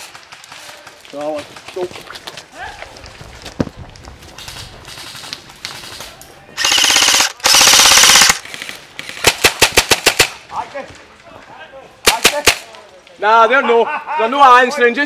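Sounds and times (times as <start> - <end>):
airsoft gun bursts: 6.6 - 10.4
sharp airsoft shots: 6.6 - 10.4, 12.1 - 12.7.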